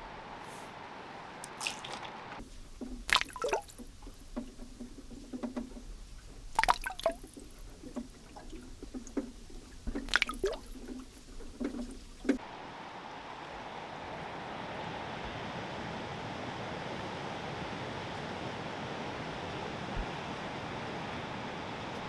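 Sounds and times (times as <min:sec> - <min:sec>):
underwater clicks: 0:01.4 - 0:12.4
underwater drips: 0:01.4 - 0:12.4
underwater splashes: 0:01.4 - 0:12.4.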